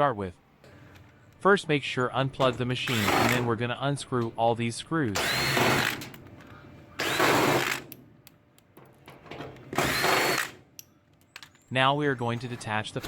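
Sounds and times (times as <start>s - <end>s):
cordless drill whirring: 2.9s - 3.4s, 5.2s - 6.0s, 7.0s - 7.8s, 9.8s - 10.6s.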